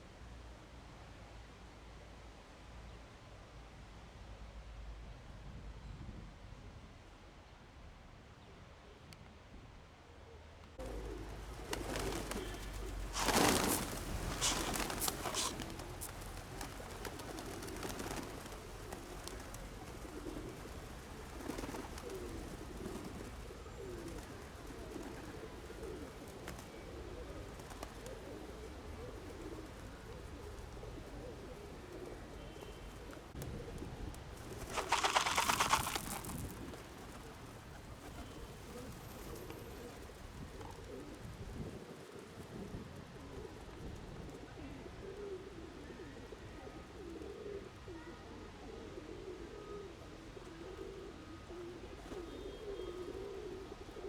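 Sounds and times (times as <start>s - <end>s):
birds cooing: 10.8s - 54.0s.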